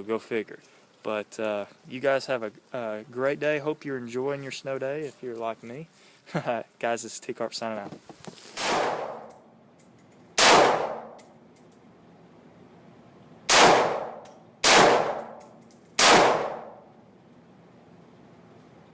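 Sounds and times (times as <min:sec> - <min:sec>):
loud sharp ringing impacts: 0:13.6 - 0:16.9.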